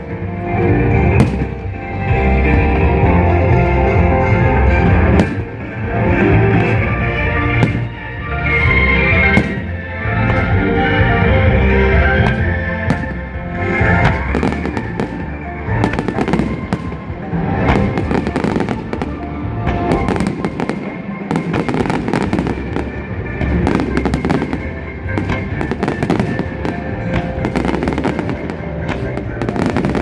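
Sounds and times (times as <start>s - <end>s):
fireworks bangs and crackles: 0.0s - 30.0s
loud music: 0.0s - 30.0s.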